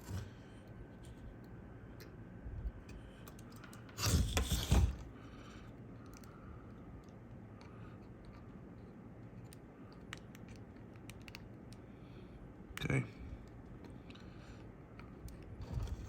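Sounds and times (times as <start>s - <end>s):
air conditioning unit hum: 0.0s - 16.0s.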